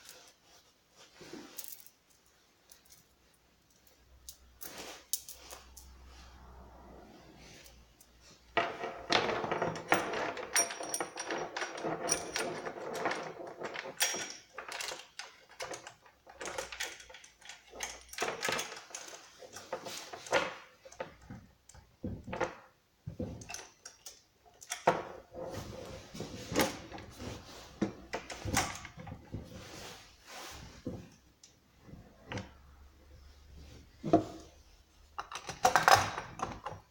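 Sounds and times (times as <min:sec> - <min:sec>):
clicks and knocks of parts: 0:08.5 - 0:25.3, 0:35.2 - 0:36.9.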